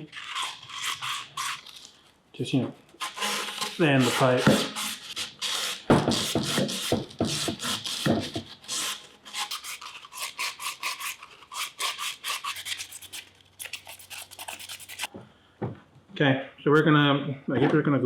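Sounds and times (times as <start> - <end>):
sandpaper rubbing plastic pipe: 0.0 - 1.9, 3.0 - 15.1.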